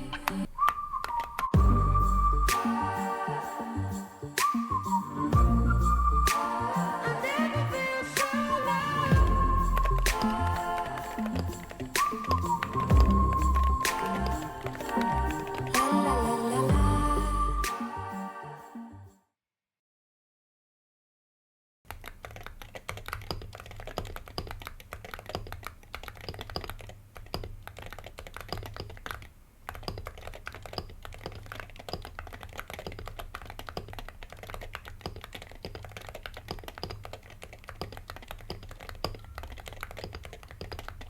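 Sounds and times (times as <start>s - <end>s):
fast keyboard typing: 7.7s - 16.6s, 21.9s - 41.0s.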